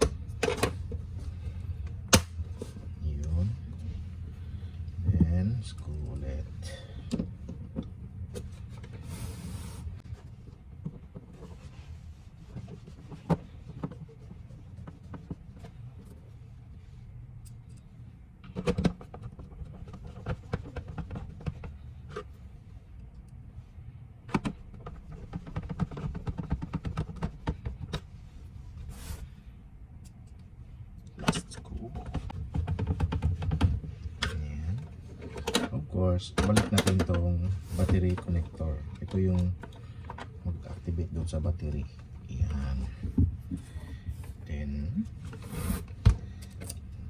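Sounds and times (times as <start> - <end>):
clicks and knocks of plastic: 24.3 - 28.0, 31.2 - 40.3.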